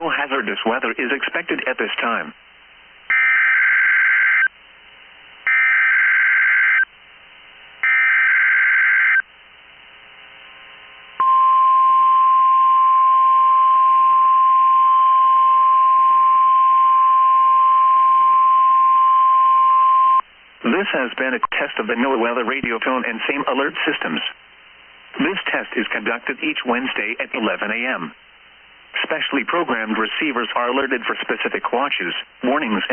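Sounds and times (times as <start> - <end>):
steady alarm tone: 3.1 - 4.5, 5.5 - 6.9, 7.8 - 9.2.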